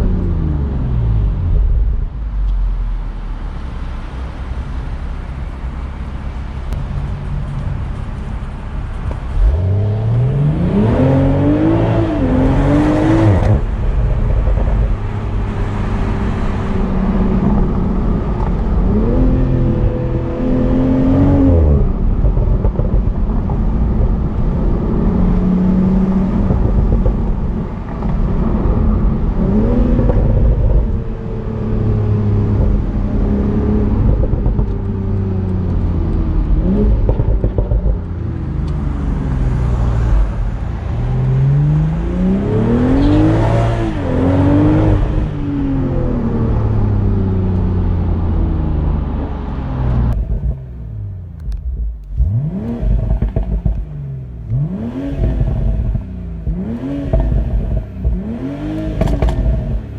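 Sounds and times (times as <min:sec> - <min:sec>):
road noise: 0:00.0 - 0:59.9
car engine revving hard: 0:09.3 - 0:23.0, 0:41.0 - 0:47.1, 0:50.0 - 0:59.9.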